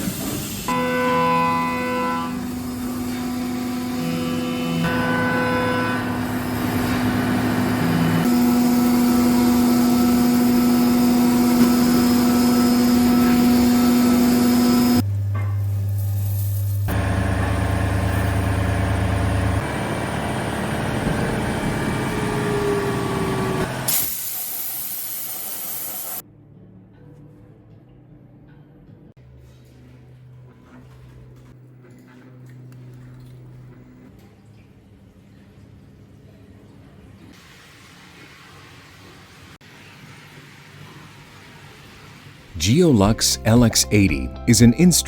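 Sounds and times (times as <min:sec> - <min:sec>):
milling machines humming: 0:01.2 - 0:15.2, 0:16.9 - 0:23.9.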